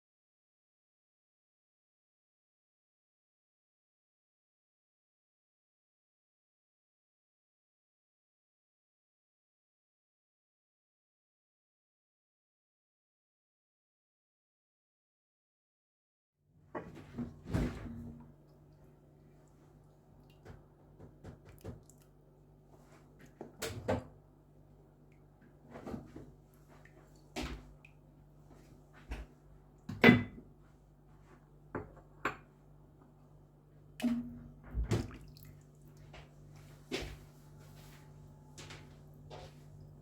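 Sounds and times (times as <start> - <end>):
faint steady hum: 16.7 - 40.0.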